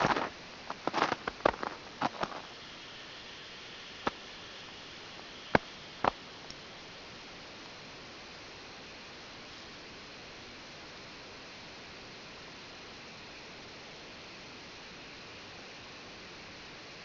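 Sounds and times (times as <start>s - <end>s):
footsteps crunching on snow: 0.0s - 2.5s
sharp snow cracks: 0.0s - 2.5s
steady hiss: 0.0s - 17.0s.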